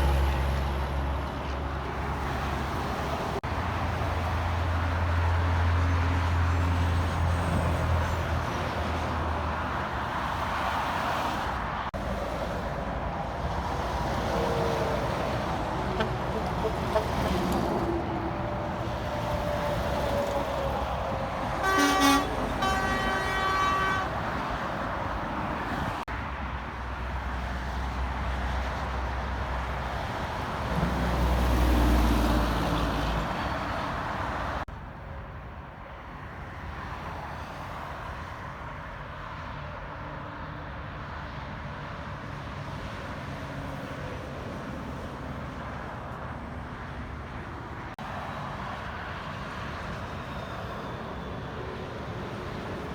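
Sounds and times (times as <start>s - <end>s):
road traffic passing: 0.0s - 52.9s
heavy vehicle engine rumble: 11.9s - 26.0s
air horn blasts: 21.5s - 24.7s.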